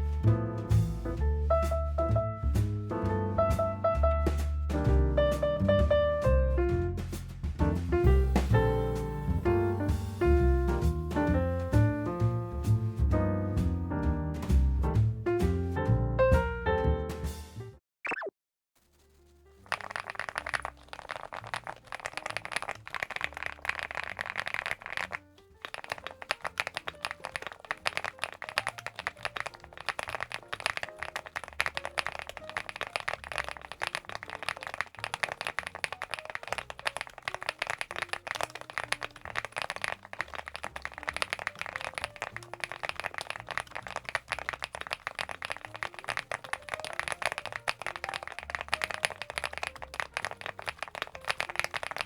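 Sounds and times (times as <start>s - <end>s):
mechanical keyboard typing: 19.6s - 52.0s.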